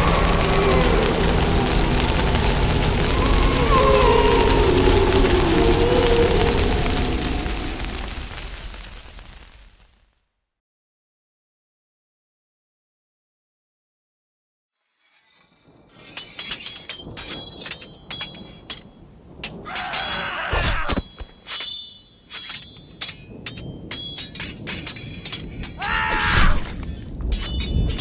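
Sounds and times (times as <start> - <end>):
glass cracking and tinkling: 15.0 - 28.0
glass crashes: 16.0 - 28.0.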